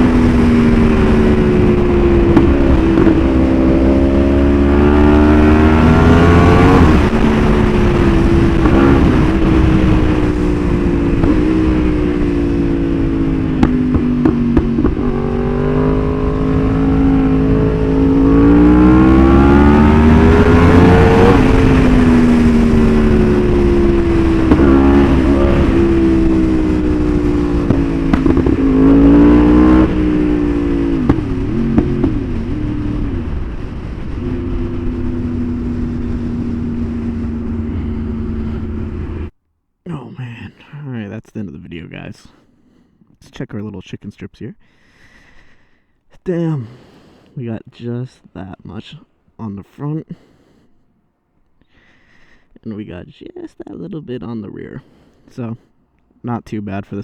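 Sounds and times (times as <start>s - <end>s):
motorcycle engine accelerating: 0.0s - 39.4s
exhaust pops: 0.0s - 40.0s.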